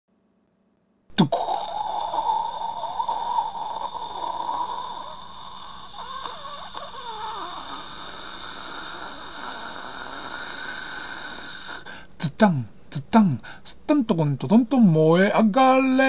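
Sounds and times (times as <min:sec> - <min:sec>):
person making mouth sound effects: 0:01.1 - 0:11.8.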